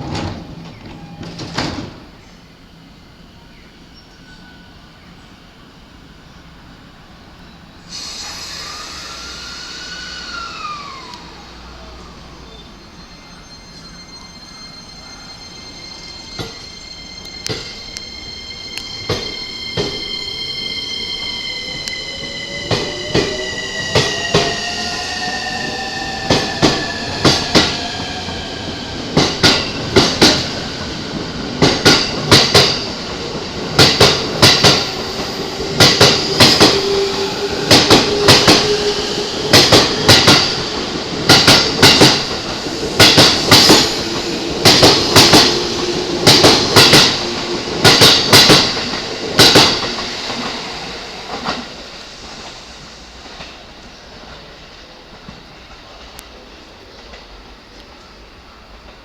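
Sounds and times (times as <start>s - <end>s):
train wheels clacking over rail joints: 31.6s - 35.0s, 35.6s - 38.8s, 39.5s - 50.6s.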